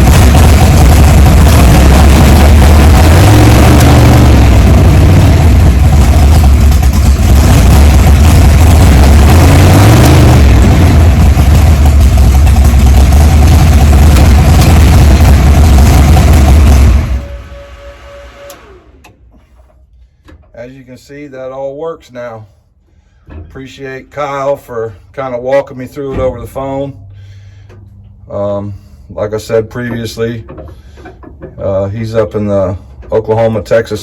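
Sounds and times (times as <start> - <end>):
car engine revving through gears: 0.0 - 17.5.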